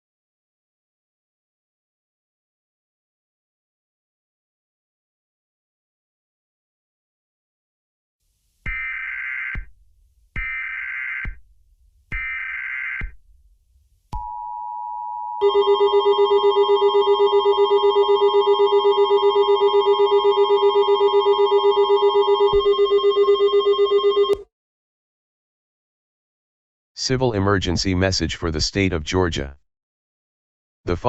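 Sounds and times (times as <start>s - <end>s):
rapidly pulsing alarm tone: 8.7s - 9.7s, 10.4s - 11.4s, 12.1s - 13.2s, 15.4s - 24.4s
two-tone attention signal: 15.4s - 24.4s.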